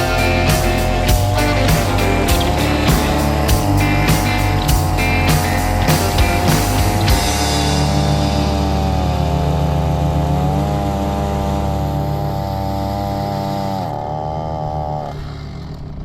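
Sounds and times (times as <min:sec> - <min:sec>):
background music: 0:00.0 - 0:10.5
chainsaw running: 0:00.0 - 0:16.0.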